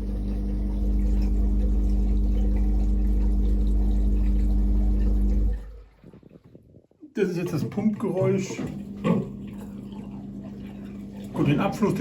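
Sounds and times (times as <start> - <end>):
washing machine drain pump humming: 0.0 - 6.4, 7.2 - 12.0.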